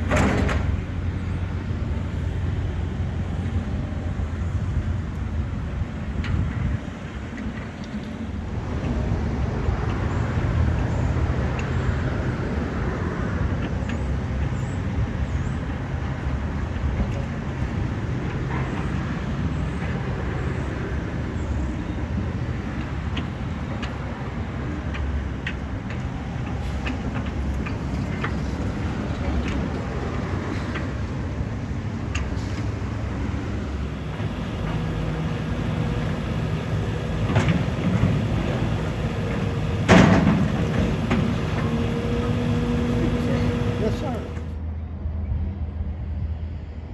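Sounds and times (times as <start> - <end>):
diesel engine of heavy machinery: 0.0 - 44.8
light metallic clanks and clicks: 34.0 - 44.5.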